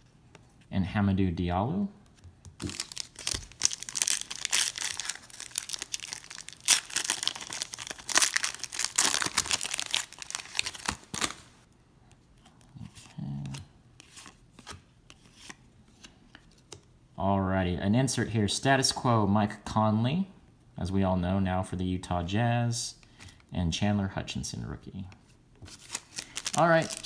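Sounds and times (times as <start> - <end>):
foil wrapper tearing and crinkling: 2.6 - 11.6, 25.7 - 27.0.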